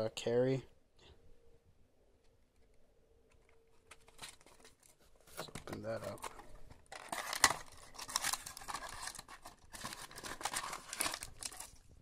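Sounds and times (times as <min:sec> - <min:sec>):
packaging torn and crinkled: 0:03.8 - 0:04.9, 0:05.7 - 0:12.0.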